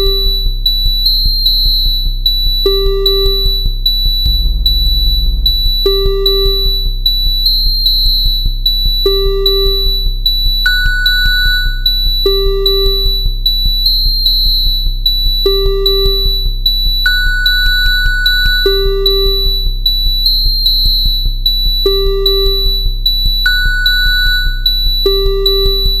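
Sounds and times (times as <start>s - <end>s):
fast ticking beat: 2.6s - 7.1s
low synth drone: 2.6s - 10.2s
repeating synth note: 4.2s - 7.0s.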